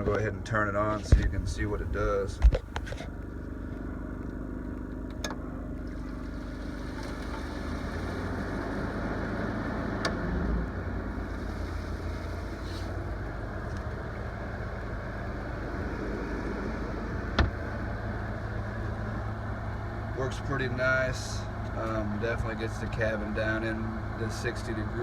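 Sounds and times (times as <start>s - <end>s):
air conditioner humming: 0.0s - 3.8s.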